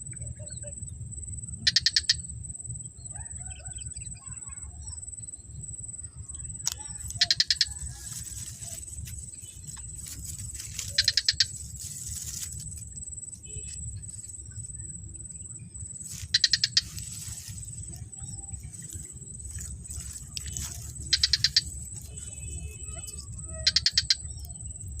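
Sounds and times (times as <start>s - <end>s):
insect high-pitched trill: 0.0s - 25.0s
insect quick chirps: 0.0s - 25.0s
low rumble: 5.4s - 23.5s.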